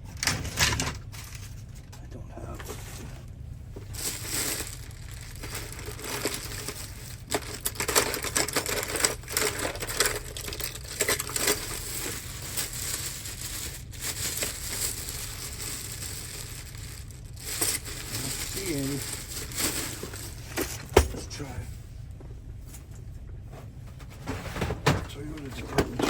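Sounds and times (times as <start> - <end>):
hands rummaging through metal keys: 3.8 - 21.4.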